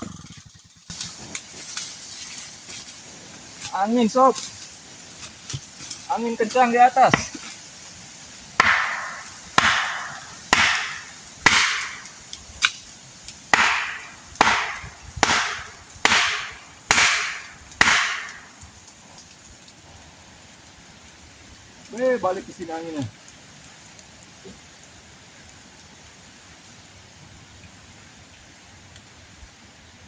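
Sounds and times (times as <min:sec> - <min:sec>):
wedge hammered into wood: 0:08.6 - 0:12.1, 0:13.5 - 0:18.5.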